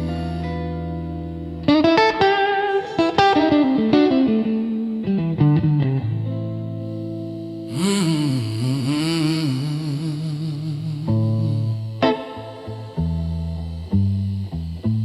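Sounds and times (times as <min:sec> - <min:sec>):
electric guitar blues: 0:00.0 - 0:15.0
person humming: 0:07.2 - 0:15.0.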